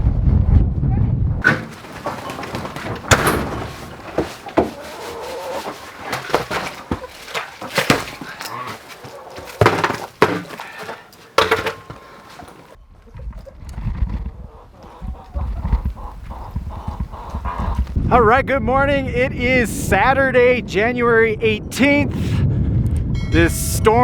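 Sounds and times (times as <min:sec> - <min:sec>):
knocks and clattering: 0:01.4 - 0:12.8.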